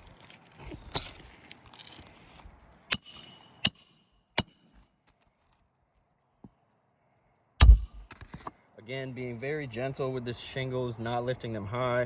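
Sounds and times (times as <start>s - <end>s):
hammer striking nail: 2.9s - 4.8s, 7.6s - 8.3s.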